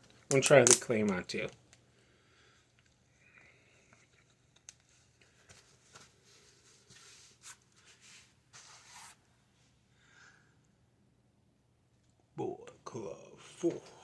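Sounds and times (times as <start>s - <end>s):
cloth rustling: 4.0s - 9.3s.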